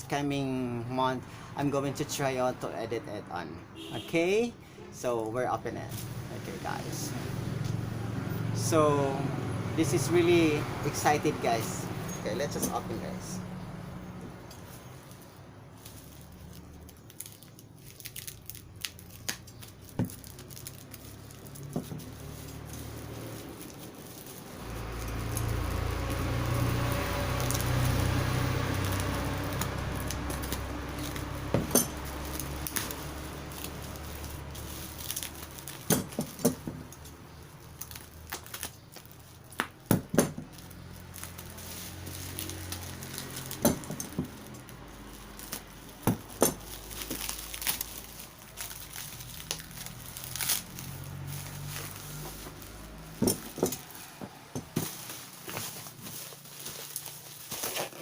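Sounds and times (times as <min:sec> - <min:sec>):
vehicle engine rumbling: 0:00.0 - 0:58.0
cardboard and plastic crinkling: 0:14.6 - 0:58.0.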